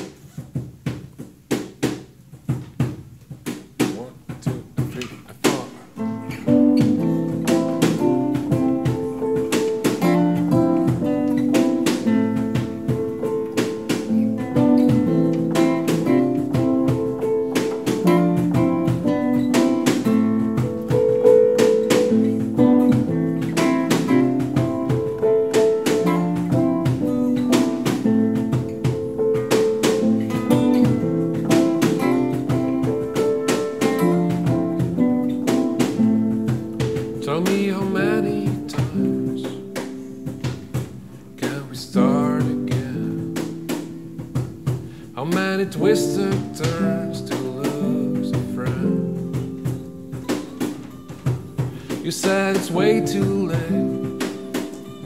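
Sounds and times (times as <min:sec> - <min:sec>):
strummed acoustic strings: 0:03.4 - 0:55.0.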